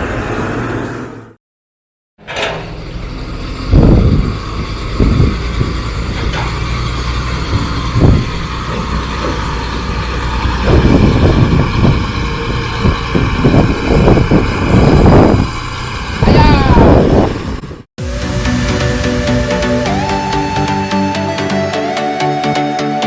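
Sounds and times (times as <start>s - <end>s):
diesel truck engine running: 2.2s - 21.7s
short thumps and knocks: 5.0s - 9.5s.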